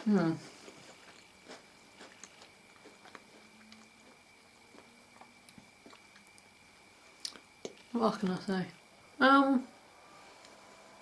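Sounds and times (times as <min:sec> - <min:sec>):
quiet chewing clicks: 0:00.8 - 0:08.5.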